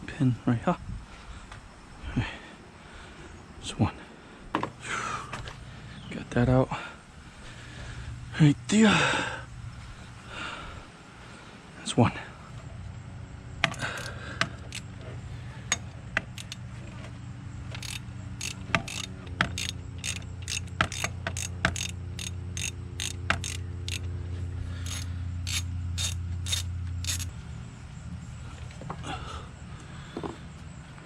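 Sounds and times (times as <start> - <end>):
steady low hum: 0.0 - 31.0
ratchet clicking on metal: 13.6 - 14.9, 15.7 - 16.6, 17.7 - 24.1, 24.8 - 27.3.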